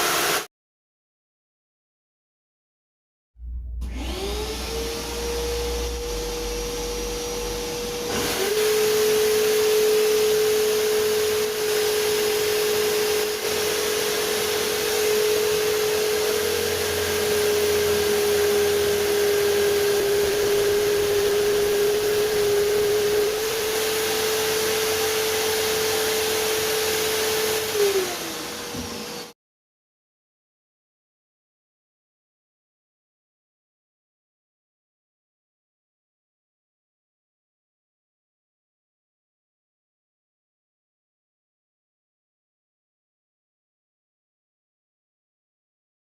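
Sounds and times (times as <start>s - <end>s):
electric drill motor whining: 3.8s - 29.3s
drum sanding wood rasping: 13.5s - 29.3s.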